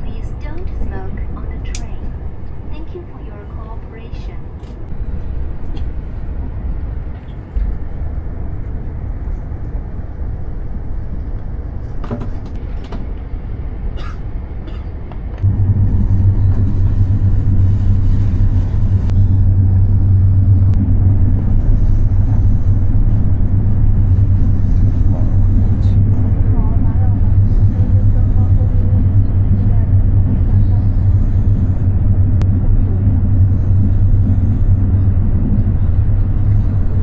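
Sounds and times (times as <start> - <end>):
train cabin rumble: 0.0 - 37.0.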